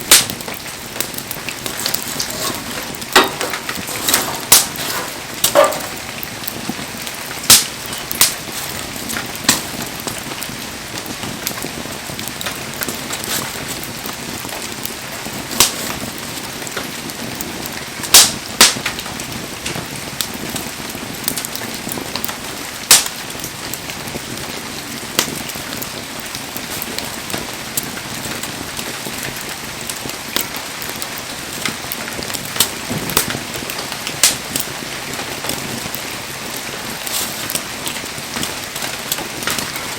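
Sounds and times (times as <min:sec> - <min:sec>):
bonfire crackling and popping: 0:00.0 - 0:39.9.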